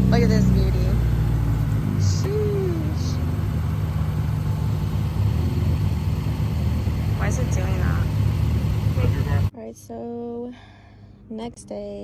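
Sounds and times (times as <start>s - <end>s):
car engine idling unevenly: 0.0s - 9.5s.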